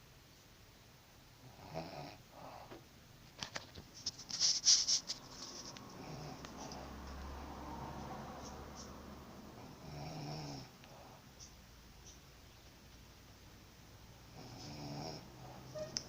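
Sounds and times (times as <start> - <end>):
person snoring: 9.6 - 11.2, 14.3 - 15.4.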